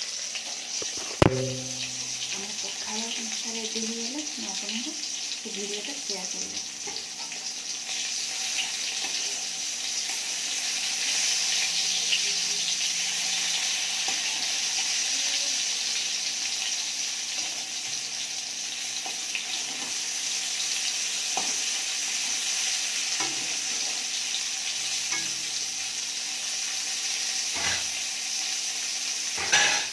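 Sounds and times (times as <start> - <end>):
food sizzling in hot oil: 0.0 - 29.9
utensil knocking in pan: 0.9 - 2.4.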